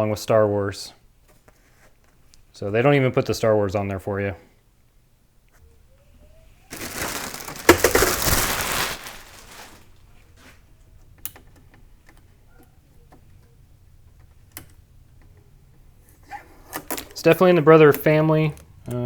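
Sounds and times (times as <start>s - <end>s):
packaging rustling and crinkling: 6.7s - 10.6s
light clicks and taps: 11.0s - 15.5s.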